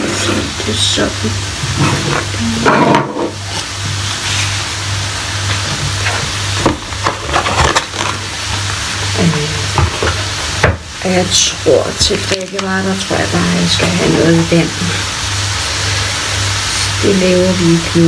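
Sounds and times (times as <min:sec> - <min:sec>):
utensil scraping pan: 0:00.0 - 0:00.7
food sizzling in frying pan: 0:00.0 - 0:18.0.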